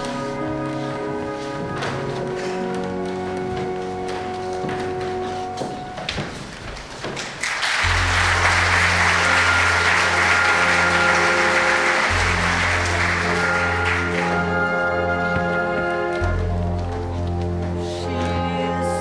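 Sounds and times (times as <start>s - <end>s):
audience applauding: 6.8s - 15.1s
low sustained accompaniment notes: 7.8s - 19.0s.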